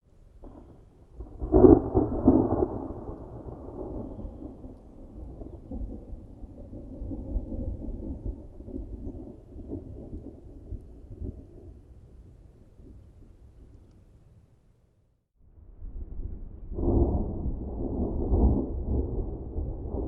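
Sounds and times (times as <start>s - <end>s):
rain: 0.0s - 14.7s
thunder crack and rumble: 0.3s - 13.3s, 15.8s - 20.0s.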